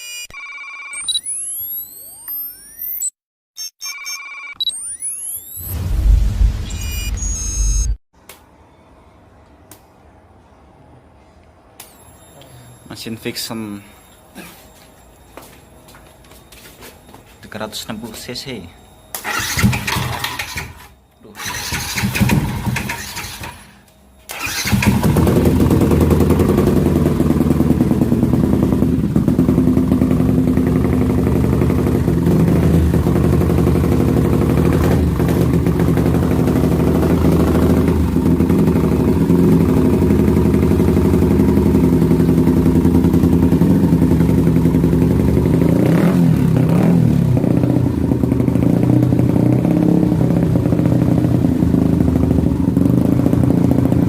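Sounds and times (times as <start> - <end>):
motorcycle engine starting and running: 19.1 - 54.0.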